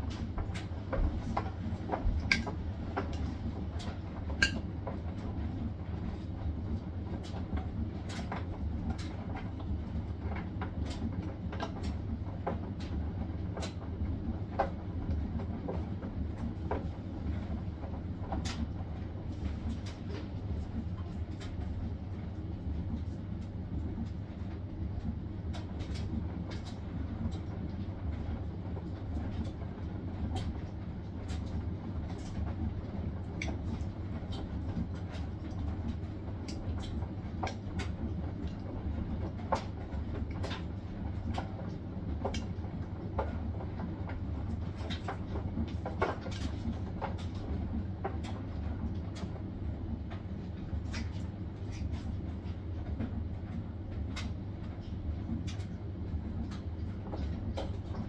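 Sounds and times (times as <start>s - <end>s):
washing machine drum rumbling: 0.0s - 6.0s.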